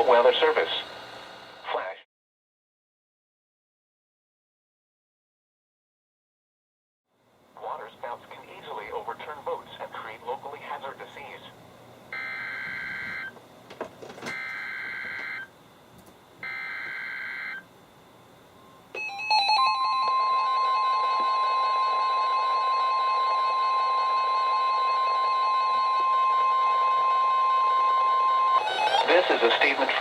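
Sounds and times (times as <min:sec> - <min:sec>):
steady warning alarm tone: 0:12.1 - 0:13.5, 0:14.2 - 0:30.0.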